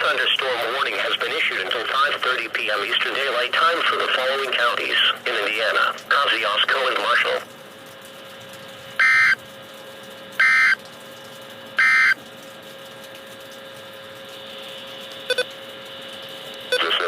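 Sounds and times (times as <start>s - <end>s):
faint steady hum: 0.0s - 17.0s
buzzy digital squawks: 9.0s - 9.4s, 10.4s - 10.8s, 11.8s - 12.2s.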